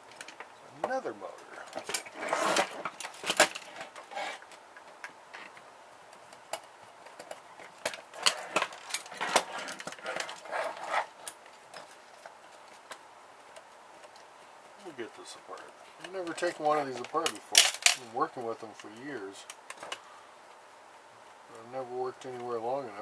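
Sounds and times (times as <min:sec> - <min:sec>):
rattling and scraping: 0:00.0 - 0:05.6, 0:07.1 - 0:12.7
plastic parts clicking and knocking: 0:16.0 - 0:18.0.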